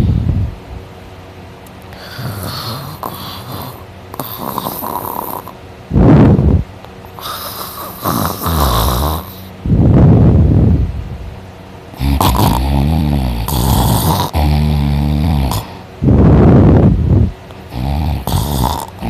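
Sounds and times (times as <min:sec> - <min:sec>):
airy breaths: 0:01.9 - 0:05.0, 0:05.9 - 0:10.8
person snoring: 0:01.9 - 0:06.6, 0:07.2 - 0:10.5, 0:12.0 - 0:19.0.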